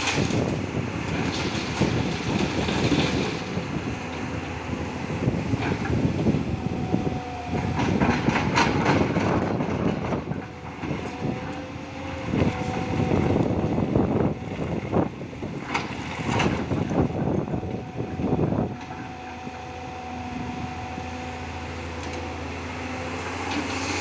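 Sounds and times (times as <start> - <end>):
excavator engine and hydraulics: 0.0 - 24.0.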